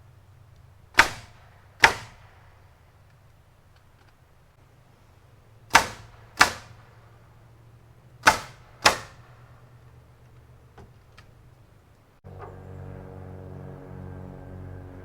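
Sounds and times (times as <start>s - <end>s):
sharp loud bangs: 0.9s - 2.8s, 5.7s - 7.2s, 8.2s - 9.6s.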